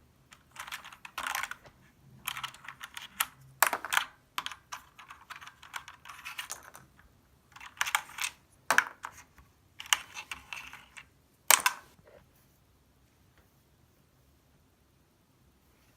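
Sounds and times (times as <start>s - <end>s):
mechanical keyboard keys clacking: 0.3s - 6.9s.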